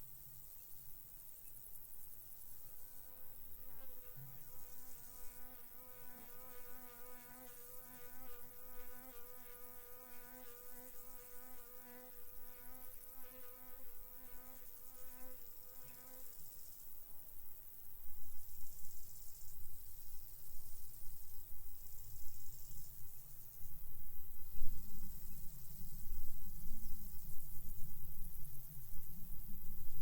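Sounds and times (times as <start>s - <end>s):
field insects chirring: 0.1s - 30.0s
flying insect buzzing: 2.8s - 16.8s.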